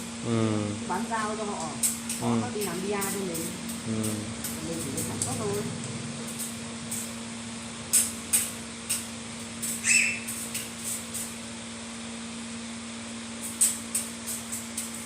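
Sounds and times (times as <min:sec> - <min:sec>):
steady electrical hum: 0:00.0 - 0:15.0
spot welder hissing snaps: 0:01.2 - 0:07.2, 0:07.8 - 0:11.4, 0:13.4 - 0:15.0.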